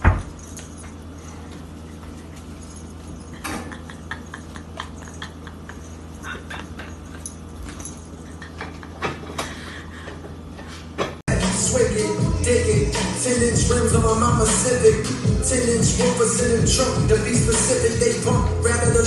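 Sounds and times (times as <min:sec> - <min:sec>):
pet clicks and scuffling: 0:00.2 - 0:08.7.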